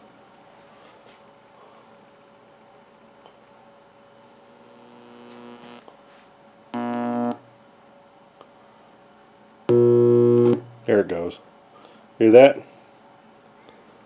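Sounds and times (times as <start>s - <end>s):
loud buzzing mains hum: 3.6s - 12.6s.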